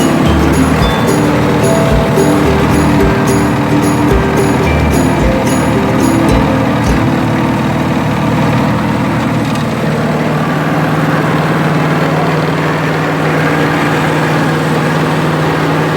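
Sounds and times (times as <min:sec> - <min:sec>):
steady low tone: 0:00.0 - 0:09.0
machine humming: 0:00.0 - 0:15.9.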